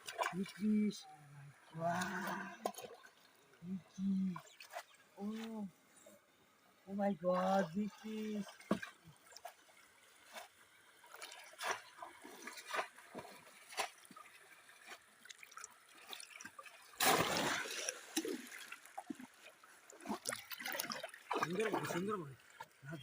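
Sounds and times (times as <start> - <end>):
shallow water splashing: 0.0 - 23.0.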